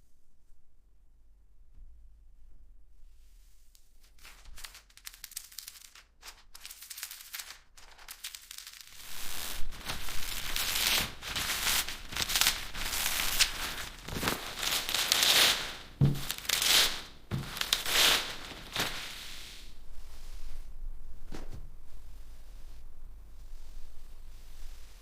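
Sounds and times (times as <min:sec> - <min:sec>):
packaging tearing and crinkling: 0:04.2 - 0:19.1.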